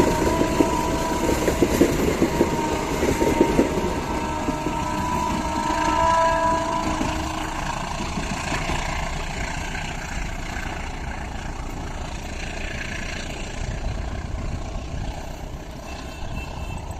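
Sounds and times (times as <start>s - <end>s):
locomotive horn: 0.0s - 10.8s, 15.6s - 16.9s
rumble of passing vehicles: 0.0s - 16.9s.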